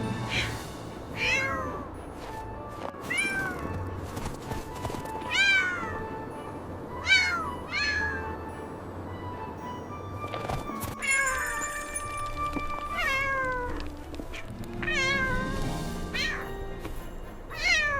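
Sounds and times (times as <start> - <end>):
soft background music: 0.0 - 17.9
kitten meowing: 5.3 - 6.0, 7.0 - 8.2, 14.3 - 15.4.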